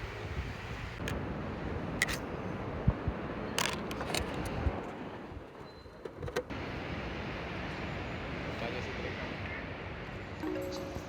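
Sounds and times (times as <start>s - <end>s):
wind rumbling on microphone: 0.0s - 5.5s.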